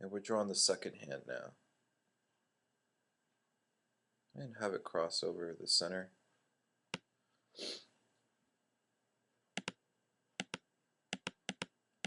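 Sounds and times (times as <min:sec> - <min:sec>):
computer mouse clicking: 0:09.6 - 0:09.8, 0:10.4 - 0:11.7.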